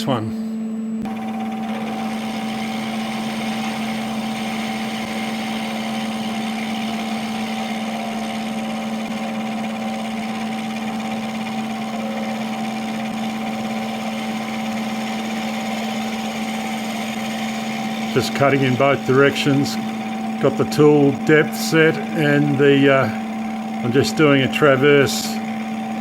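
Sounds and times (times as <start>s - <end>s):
milling machine humming: 0.0s - 26.0s.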